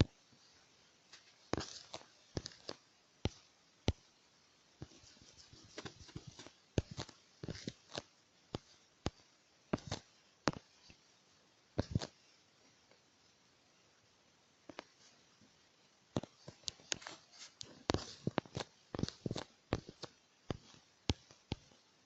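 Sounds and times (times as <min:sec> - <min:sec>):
sharp clicks and taps: 0:04.8 - 0:11.0, 0:11.8 - 0:12.2, 0:16.1 - 0:21.8
faint rustling: 0:16.2 - 0:21.7.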